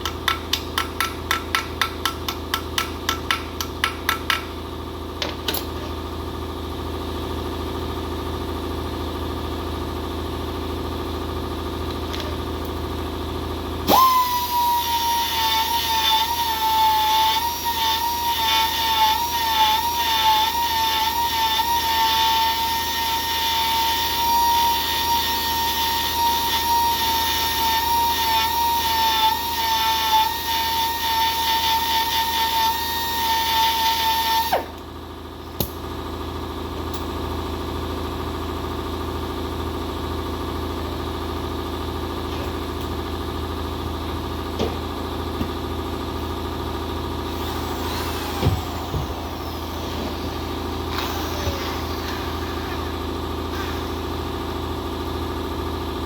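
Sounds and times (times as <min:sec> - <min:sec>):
power grinder whining: 0:13.9 - 0:34.8, 0:47.2 - 0:54.0.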